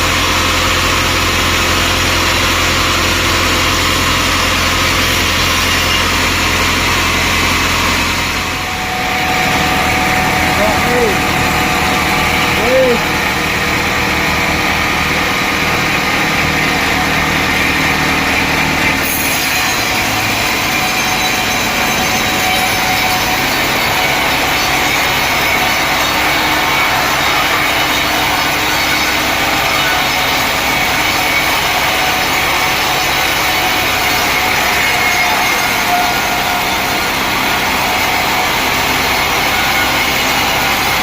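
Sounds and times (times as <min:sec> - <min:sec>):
saw blade cutting log: 0:01.4 - 0:08.6, 0:09.2 - 0:41.0
motor hum: 0:05.5 - 0:32.4.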